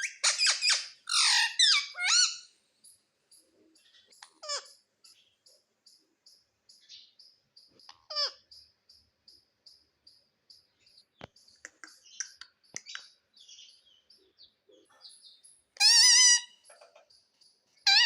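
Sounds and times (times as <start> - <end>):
parrot chirping and clicking: 0.0 - 2.3, 4.1 - 4.7, 11.2 - 13.2, 15.8 - 16.4
parrot harsh call: 0.0 - 2.5, 15.8 - 16.6.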